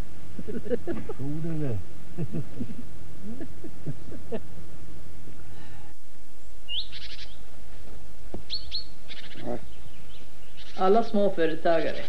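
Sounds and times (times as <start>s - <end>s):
bird calling with trill: 6.7s - 7.4s, 8.5s - 12.0s.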